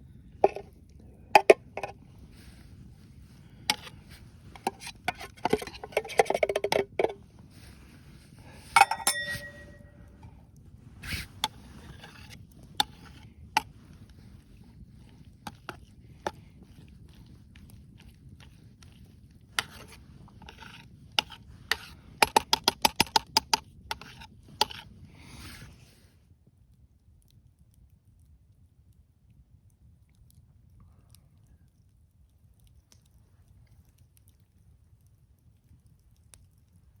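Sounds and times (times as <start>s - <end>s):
utensil scraping metal pot: 0.4s - 0.7s, 1.4s - 25.8s
ringing metal clink: 8.8s - 10.0s.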